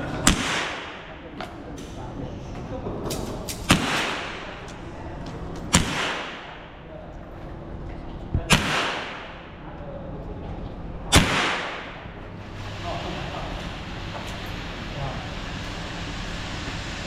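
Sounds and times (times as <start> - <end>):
gunshots with echo: 0.1 - 1.4, 3.5 - 4.9, 5.7 - 7.0, 8.4 - 9.7, 11.1 - 12.3.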